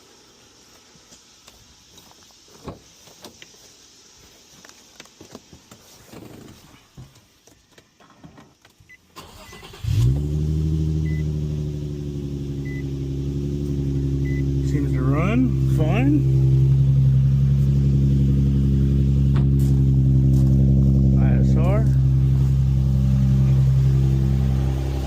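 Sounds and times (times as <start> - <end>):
car engine starting and idling: 8.9 - 25.0.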